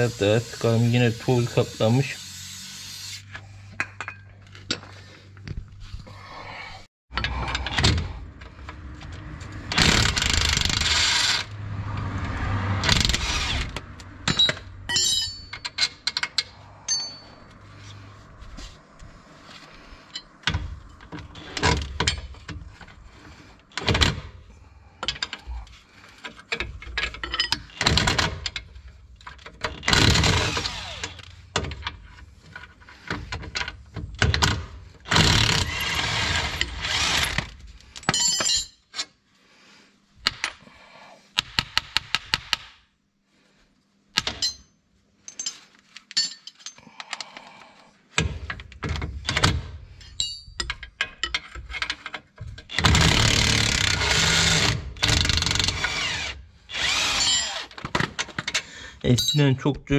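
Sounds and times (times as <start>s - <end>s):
metal tools clinking and knocking: 3.8s - 4.9s, 14.2s - 17.6s, 26.2s - 29.9s, 38.0s - 39.1s, 44.2s - 47.4s, 49.3s - 52.8s, 57.1s - 59.8s.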